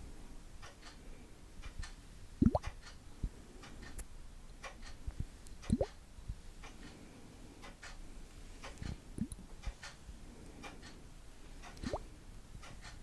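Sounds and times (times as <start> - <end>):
plops rising in pitch: 2.4 - 2.6.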